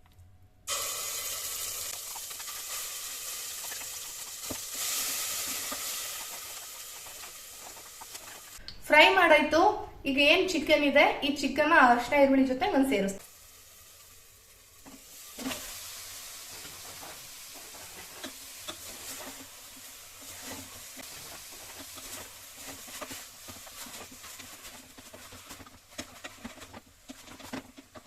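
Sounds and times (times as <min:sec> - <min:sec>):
chicken sizzling in hot oil: 0:00.7 - 0:08.6, 0:13.2 - 0:28.0
stirring clicks: 0:20.2 - 0:28.0.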